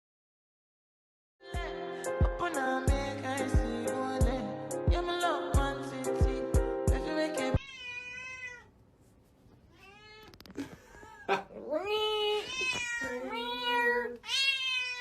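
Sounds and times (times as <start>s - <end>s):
backing music: 1.5s - 7.6s
cat meowing: 7.6s - 8.7s, 9.7s - 10.5s, 11.9s - 15.0s.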